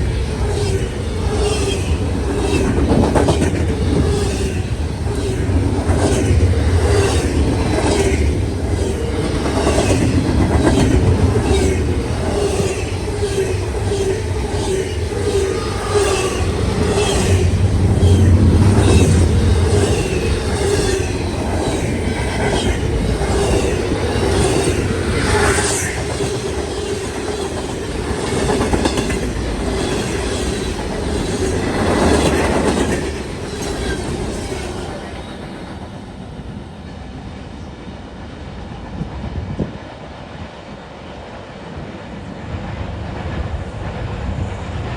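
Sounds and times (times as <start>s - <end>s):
train rumble: 0.0s - 44.9s
train wheels clicking over rail joints: 0.4s - 36.0s.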